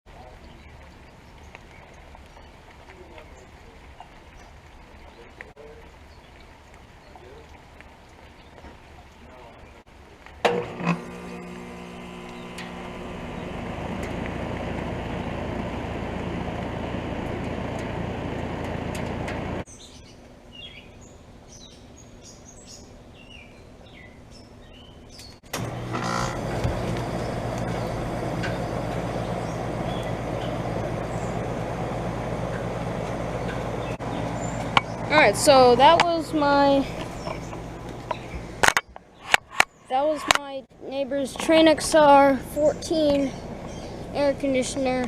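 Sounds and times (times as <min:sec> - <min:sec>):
birds chirping: 0:00.1 - 0:09.9, 0:10.9 - 0:45.0
air conditioner compressor and fan: 0:10.5 - 0:19.6, 0:25.5 - 0:38.6.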